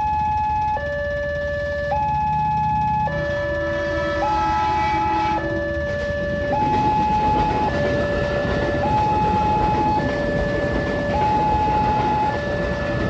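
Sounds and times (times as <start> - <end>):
passing train: 0.0 - 13.0
two-tone level crossing siren: 0.0 - 13.0.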